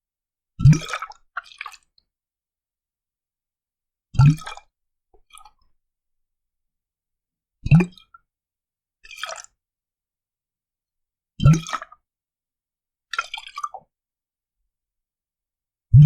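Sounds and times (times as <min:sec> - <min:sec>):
water glugging in glass bottle: 0:04.2 - 0:04.6, 0:07.7 - 0:08.0.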